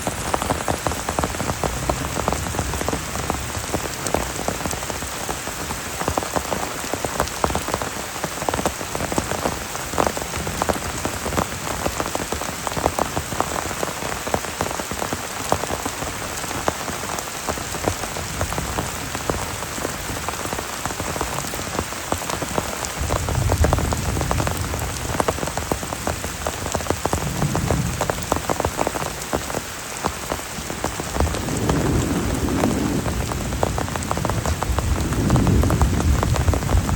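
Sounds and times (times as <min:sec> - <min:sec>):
heavy rain falling: 0:00.0 - 0:36.9
low rumbles: 0:31.3 - 0:36.9.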